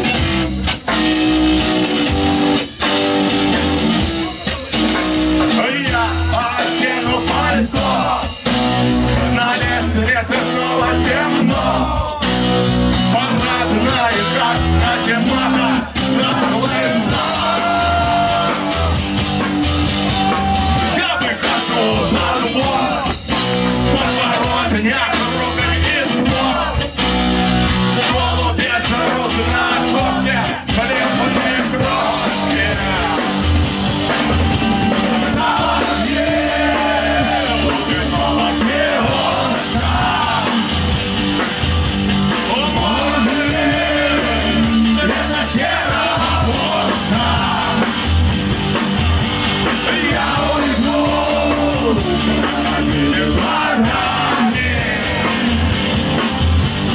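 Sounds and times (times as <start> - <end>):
punk rock band playing live: 0.0 - 56.9
singer shouting vocals: 4.1 - 8.4, 9.0 - 19.2, 20.0 - 23.2, 23.8 - 26.9, 27.9 - 33.6, 34.4 - 40.9, 42.3 - 48.0, 49.7 - 55.6.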